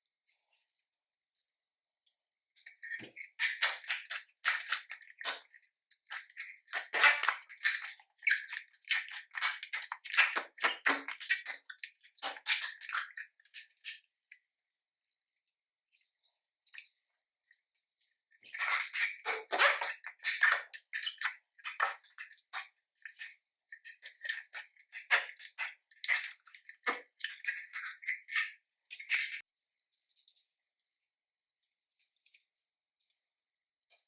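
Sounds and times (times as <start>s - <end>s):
wet crackling and popping: 3.1s - 14.7s.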